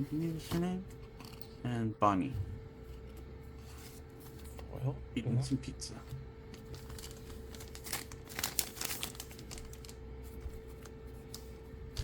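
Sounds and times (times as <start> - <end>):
foil wrapper crinkling: 6.5 - 12.0.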